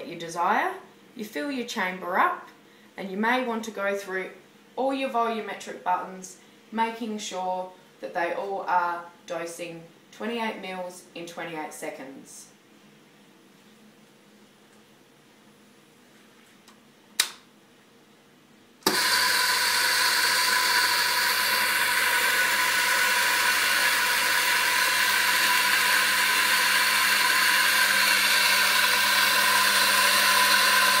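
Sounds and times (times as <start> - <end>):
switch click: 17.2 - 17.4
coffee grinder motor whirring: 18.8 - 31.0.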